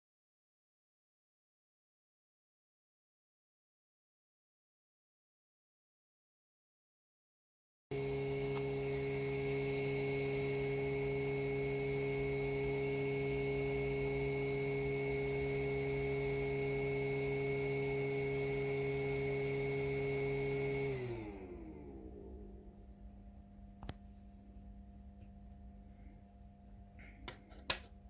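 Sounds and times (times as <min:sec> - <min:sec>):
small electric motor humming: 0:07.9 - 0:22.6.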